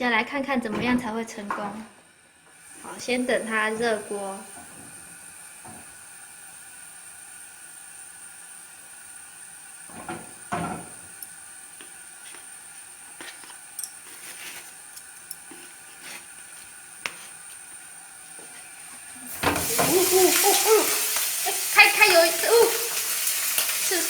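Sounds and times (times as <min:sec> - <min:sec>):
faint steady hiss: 0:00.0 - 0:24.0
kitchen knocks and clatters: 0:09.9 - 0:11.0, 0:19.3 - 0:21.2.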